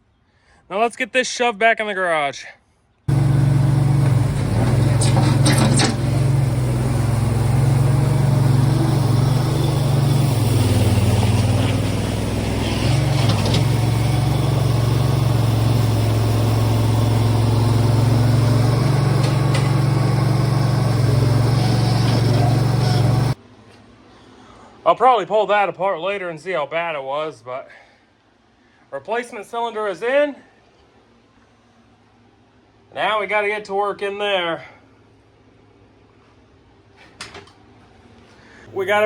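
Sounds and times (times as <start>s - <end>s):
metallic clanks: 3.1s - 15.2s, 17.7s - 23.4s
heavy equipment engine running: 3.1s - 23.4s.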